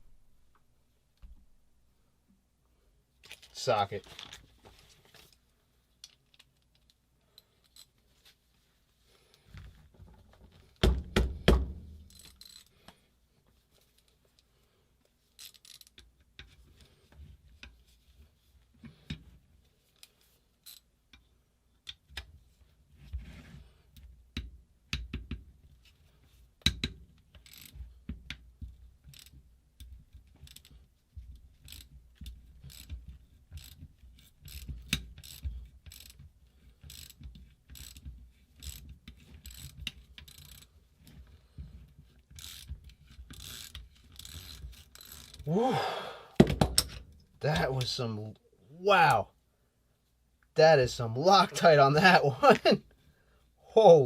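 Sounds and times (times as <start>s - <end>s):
ratchet clicking: 12.0s - 12.7s, 15.4s - 16.0s, 27.4s - 27.8s, 29.1s - 29.4s, 30.4s - 30.8s, 31.6s - 40.7s, 42.3s - 45.5s.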